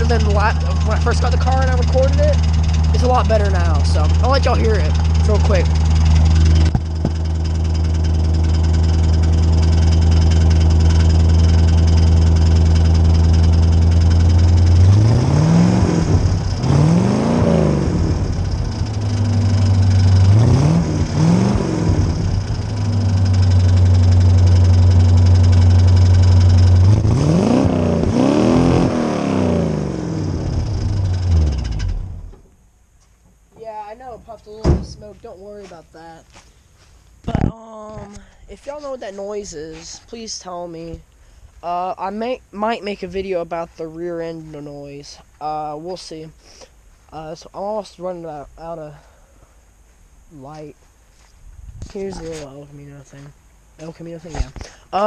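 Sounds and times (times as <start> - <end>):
car engine idling and revving: 0.0 - 32.6.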